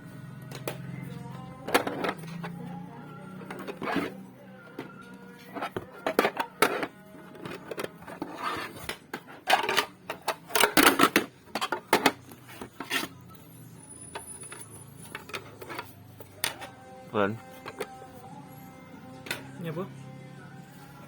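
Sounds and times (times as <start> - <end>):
items clattering: 1.4 - 2.7, 3.3 - 13.2, 14.1 - 16.8, 17.4 - 18.2.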